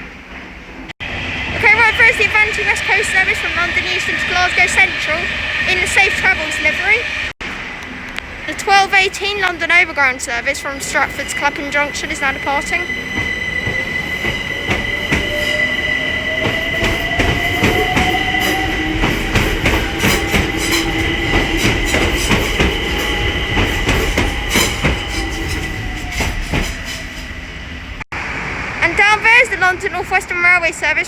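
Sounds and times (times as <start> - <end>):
high-pitched squeal: 1.0 - 7.4, 10.4 - 28.0
electric train motors whining: 1.0 - 28.0
wheels clicking over rail joints: 16.2 - 27.3.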